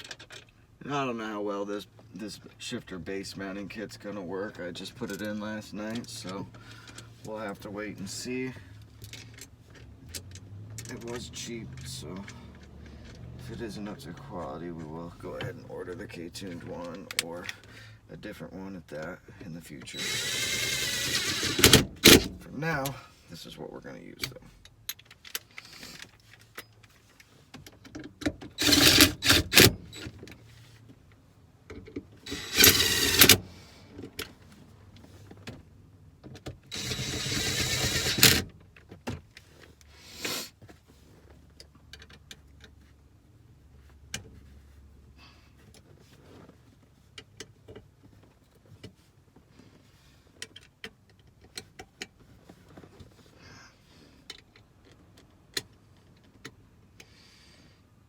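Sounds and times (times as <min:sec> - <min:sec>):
light clicks and taps of tools: 0:08.7 - 0:14.2, 0:40.6 - 0:43.1, 0:45.6 - 0:49.6, 0:50.3 - 0:53.2, 0:54.2 - 0:57.1
power tool bursts: 0:19.9 - 0:22.3, 0:28.6 - 0:30.0, 0:32.3 - 0:33.6, 0:36.7 - 0:38.5.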